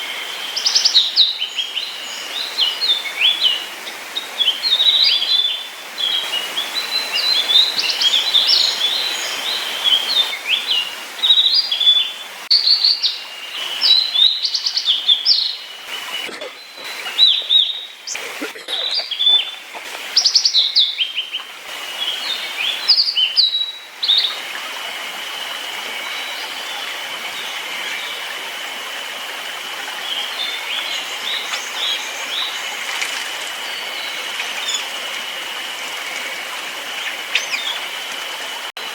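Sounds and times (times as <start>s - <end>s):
songbirds chirping and trilling: 0.0s - 24.8s
steady hiss: 0.0s - 38.9s.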